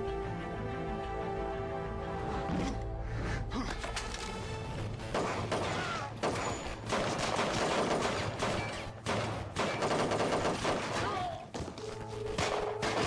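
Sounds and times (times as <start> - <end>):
tense film score drone: 0.0 - 13.0
gunfire bursts: 5.1 - 11.3, 12.4 - 13.0.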